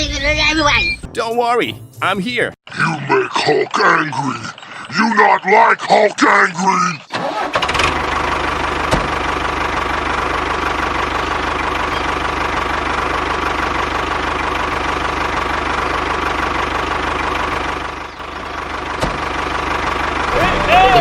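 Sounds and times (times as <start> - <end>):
small engine chugging: 7.0 - 21.0.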